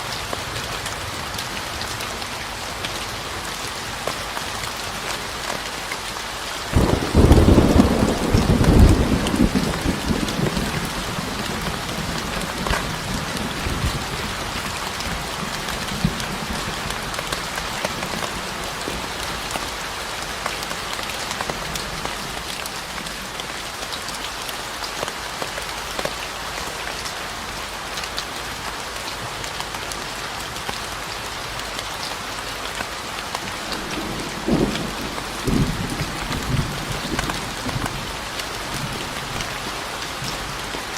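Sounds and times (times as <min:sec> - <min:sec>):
steady rain falling: 0:00.0 - 0:40.9
thunder rumbling: 0:06.7 - 0:17.0, 0:33.4 - 0:40.9.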